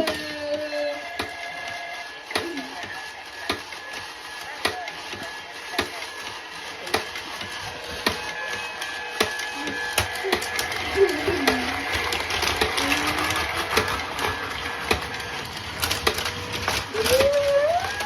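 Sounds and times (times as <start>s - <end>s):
thin motor whine: 0.0s - 18.0s
toy train rattling on track: 0.0s - 18.0s
plastic parts clicking: 9.2s - 18.0s.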